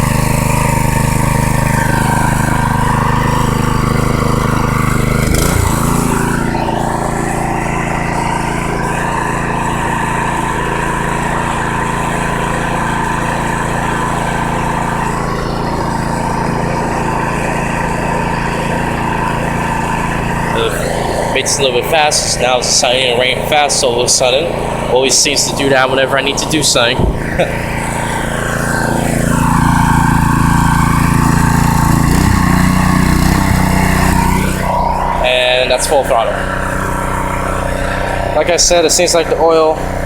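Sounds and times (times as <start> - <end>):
small engine running: 0.0 - 40.0.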